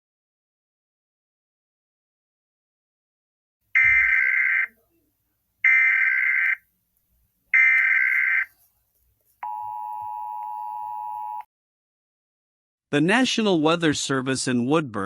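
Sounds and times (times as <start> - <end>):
screechy digital data tones: 3.8 - 4.7.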